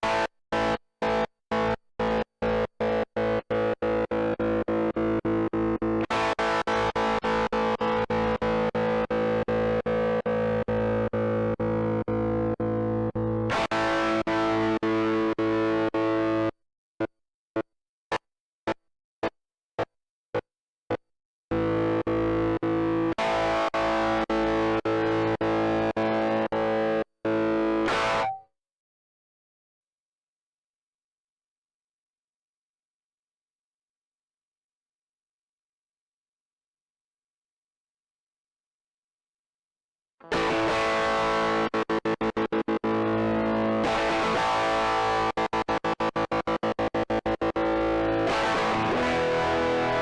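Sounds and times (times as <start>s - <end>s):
chopped overdriven electric guitar: 0.0s - 16.5s, 21.5s - 28.4s, 40.2s - 50.0s
distorted electric guitar chord: 27.9s - 28.4s, 40.3s - 50.0s.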